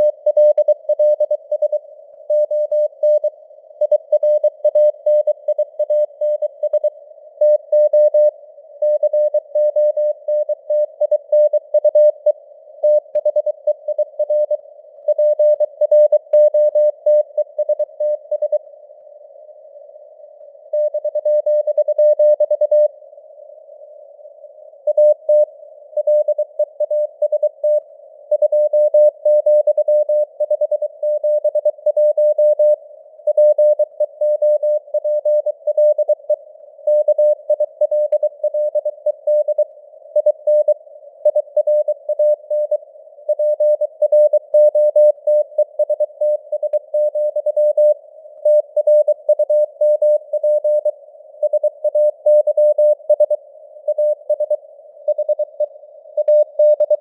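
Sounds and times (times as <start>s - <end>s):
morse code beeps: 40.2s - 57.0s.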